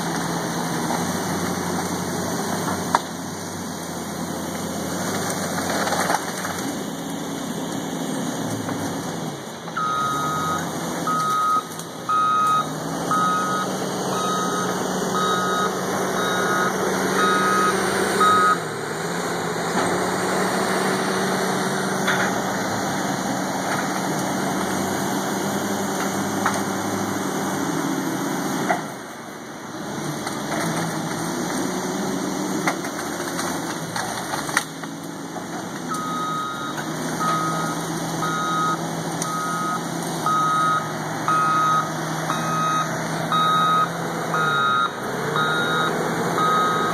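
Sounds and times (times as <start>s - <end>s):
loader engine running under load: 0.0s - 46.9s
reversing alarm beeping: 9.8s - 18.7s, 35.9s - 46.9s.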